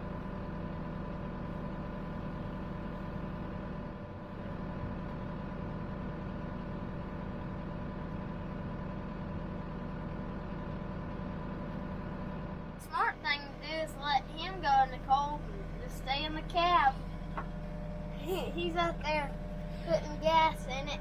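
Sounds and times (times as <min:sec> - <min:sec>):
diesel engine idling: 0:06.6 - 0:21.0.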